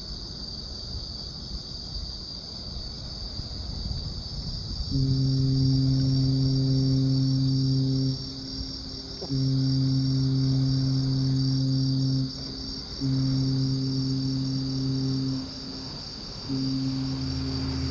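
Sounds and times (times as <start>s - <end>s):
crickets chirring: 0.0s - 17.9s
low ship's horn blasts: 3.6s - 17.9s.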